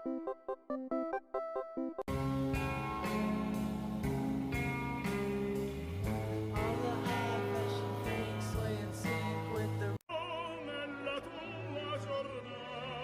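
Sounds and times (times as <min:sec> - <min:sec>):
song with guitar and singing: 0:04.6 - 0:13.0.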